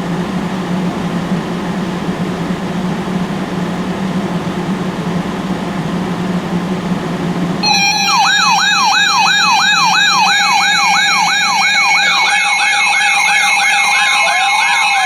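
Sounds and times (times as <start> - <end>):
low hum: 4.7 - 14.2.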